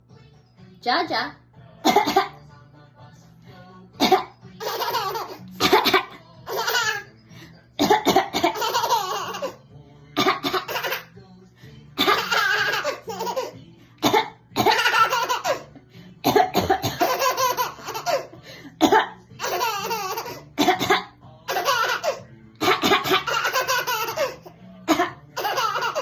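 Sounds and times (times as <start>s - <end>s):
woman coughing: 1.8s - 2.4s, 4.0s - 4.4s, 5.6s - 6.2s, 7.8s - 8.7s, 10.2s - 11.0s, 12.0s - 12.4s, 14.0s - 15.2s, 16.2s - 17.3s, 18.8s - 19.2s, 20.6s - 21.2s, 22.6s - 23.3s, 24.9s - 25.2s
baby laughing: 4.0s - 7.2s, 7.9s - 11.2s, 12.0s - 15.8s, 16.5s - 26.0s.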